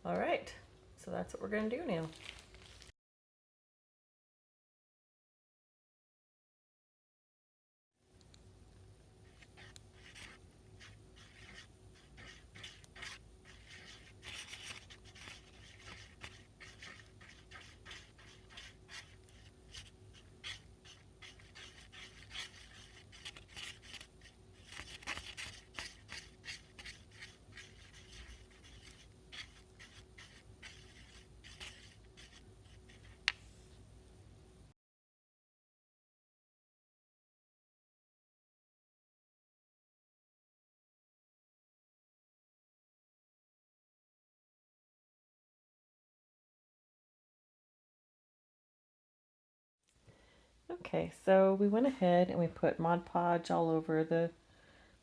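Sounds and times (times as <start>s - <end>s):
paintbrush scratching on wood: 9.3s - 33.2s.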